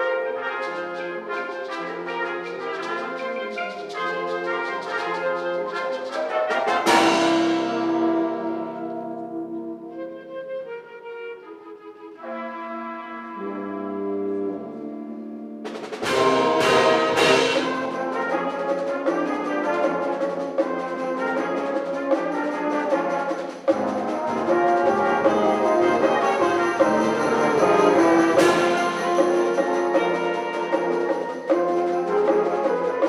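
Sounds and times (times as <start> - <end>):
wind ensemble playing: 0.0 - 33.0
sharp percussion hits: 6.8 - 9.4, 15.8 - 19.3, 23.1 - 31.6.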